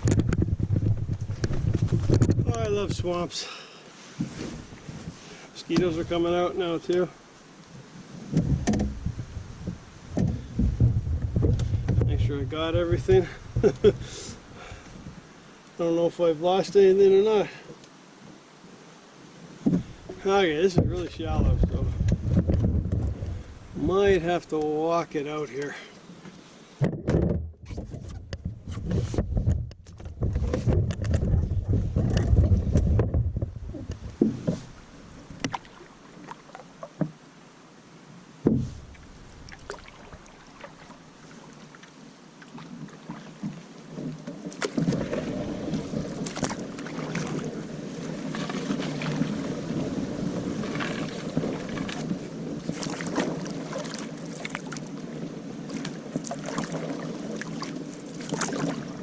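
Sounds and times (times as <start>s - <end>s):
paddle stroking water: 0.0s - 59.0s
water splashing around a canoe: 0.0s - 59.0s
hollow knocks on canoe hull: 8.3s - 12.2s, 19.6s - 23.2s, 26.8s - 34.7s, 38.4s - 39.0s
heavy low rumble: 20.8s - 24.4s.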